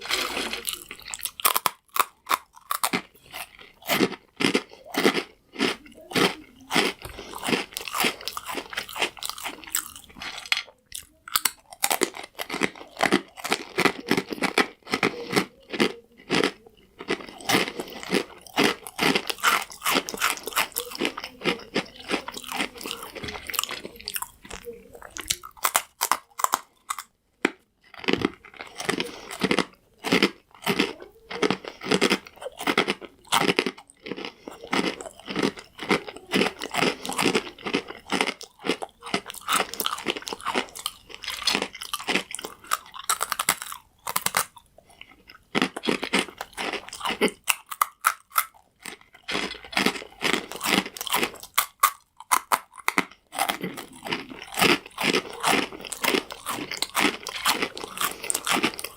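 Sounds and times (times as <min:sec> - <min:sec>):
crunchy chewing: 0:00.0 - 0:58.9.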